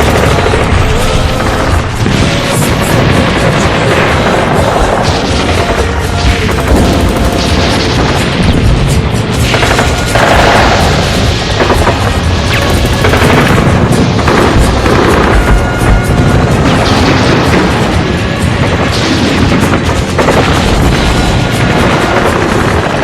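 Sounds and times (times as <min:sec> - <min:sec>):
booming explosions: 0:00.0 - 0:23.0
machine-gun fire: 0:00.0 - 0:23.0
song music: 0:00.0 - 0:23.0.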